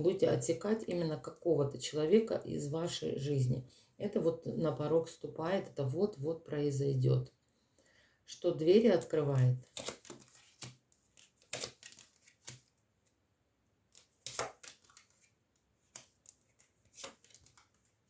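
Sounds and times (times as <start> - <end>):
cards snapping and rustling: 9.6 - 12.8, 13.9 - 17.8.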